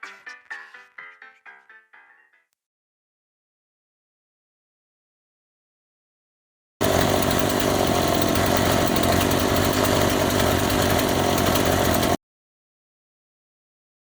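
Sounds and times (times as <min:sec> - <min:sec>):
chainsaw running: 0:06.8 - 0:12.2.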